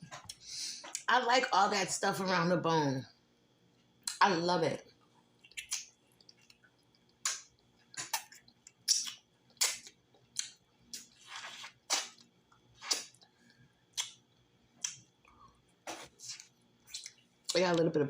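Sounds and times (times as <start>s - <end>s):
wet chewing and lip smacking: 5.0s - 17.6s
slurp: 11.0s - 12.2s, 12.8s - 13.2s, 15.9s - 17.2s.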